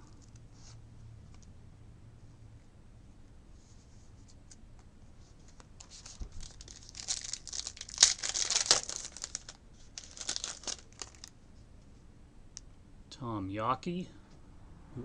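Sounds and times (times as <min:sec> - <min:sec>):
wrapper being torn and crinkled: 0:05.8 - 0:11.4.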